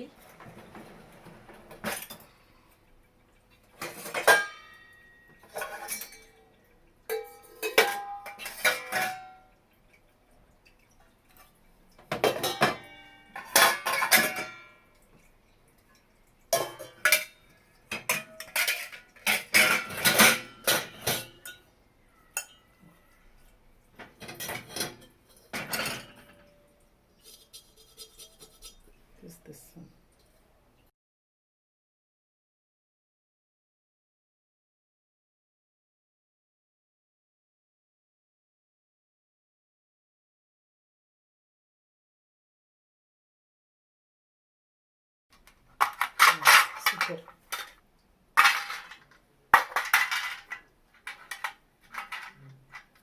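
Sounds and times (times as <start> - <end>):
dishes and metal utensils clinking: 0.2 - 2.5, 3.5 - 10.0, 10.6 - 23.0, 23.9 - 29.0, 45.8 - 47.8, 48.4 - 53.0.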